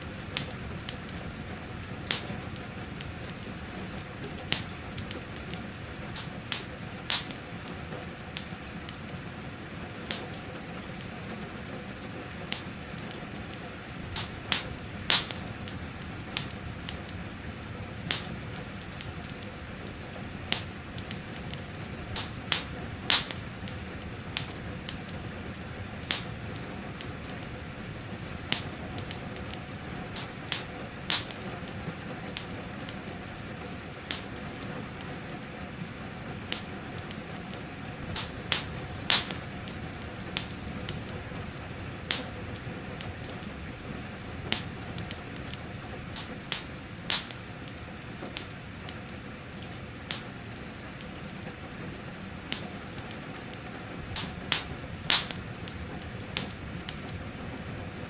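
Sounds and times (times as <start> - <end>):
sharp fire pops: 0.0 - 11.6, 12.5 - 34.6, 36.4 - 49.1, 50.0 - 50.4, 52.5 - 58.0
gentle rain: 0.0 - 58.0
wood fire crackling: 0.0 - 58.0.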